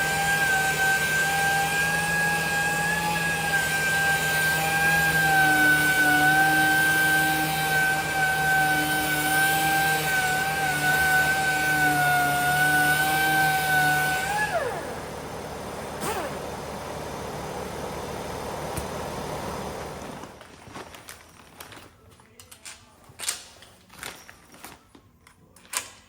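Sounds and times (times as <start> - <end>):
air sander whining: 0.0 - 20.4.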